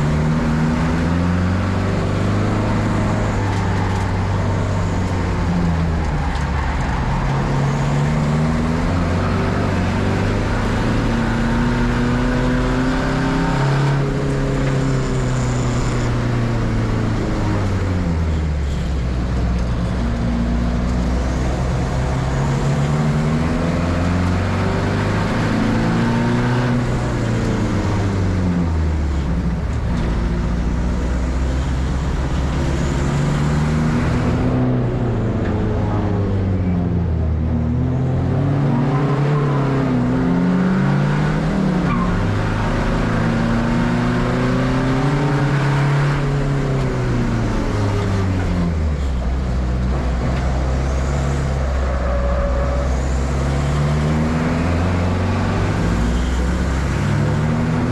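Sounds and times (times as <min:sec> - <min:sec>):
racing car engine revving: 0:00.0 - 0:18.8, 0:19.6 - 0:57.9.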